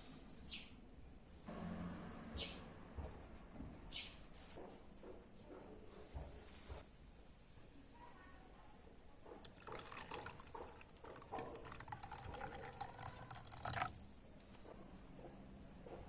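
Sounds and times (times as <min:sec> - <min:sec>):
liquid being poured: 0:09.4 - 0:14.2.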